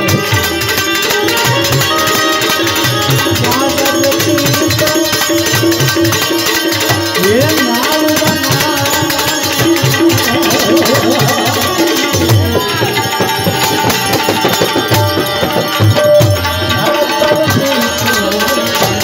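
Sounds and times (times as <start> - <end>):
banjo melody: 0.0 - 6.6, 10.0 - 17.1
fast tabla rhythm: 0.0 - 19.0
hand cymbals ticking: 0.0 - 19.0.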